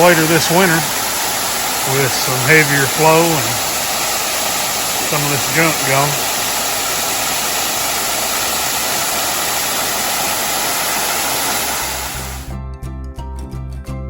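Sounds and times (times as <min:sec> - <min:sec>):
waterfall rushing: 0:00.0 - 0:12.5
background music with held notes: 0:12.5 - 0:14.0.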